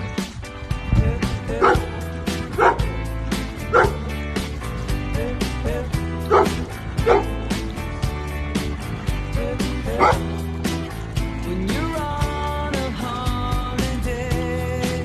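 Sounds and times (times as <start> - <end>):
background music with beat: 0.0 - 15.0
dog barking: 1.6 - 1.9, 2.5 - 2.9, 3.7 - 4.0, 6.3 - 7.4, 9.9 - 10.3.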